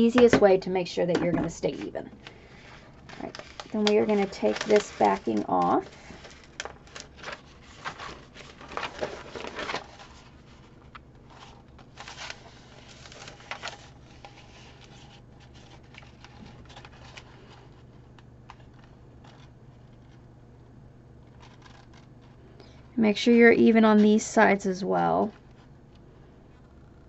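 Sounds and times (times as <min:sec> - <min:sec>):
paper backing peeling off vinyl: 0:01.7 - 0:20.2, 0:21.2 - 0:22.4.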